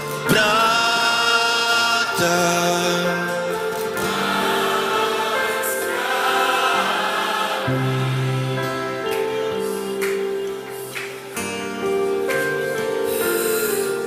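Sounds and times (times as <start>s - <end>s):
worship song singing: 0.0s - 11.2s.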